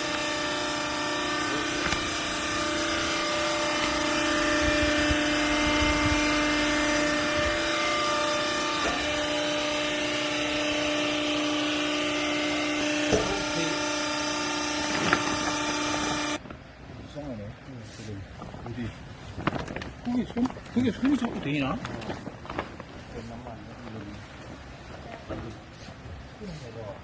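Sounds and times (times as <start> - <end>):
hydraulic pump motor humming: 0.0 - 16.4.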